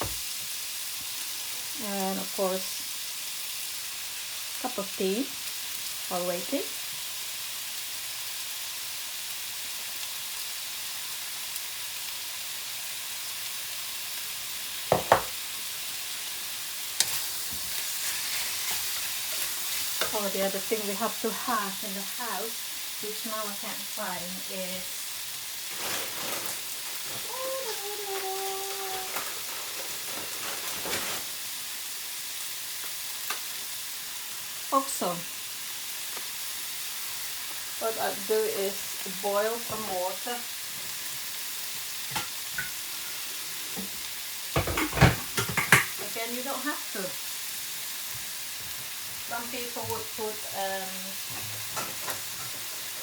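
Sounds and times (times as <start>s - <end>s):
food sizzling in frying pan: 0.0s - 53.0s.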